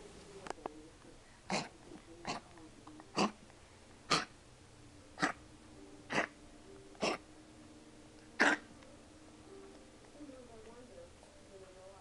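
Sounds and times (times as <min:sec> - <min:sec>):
puppy coughing: 0:01.5 - 0:02.5, 0:03.1 - 0:03.4, 0:04.1 - 0:04.4, 0:05.2 - 0:05.4, 0:06.1 - 0:06.4, 0:07.0 - 0:07.2, 0:08.4 - 0:08.7.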